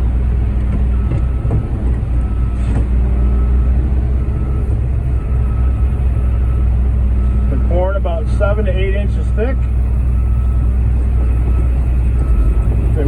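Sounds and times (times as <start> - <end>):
diesel engine at high idle: 0.0 - 13.0.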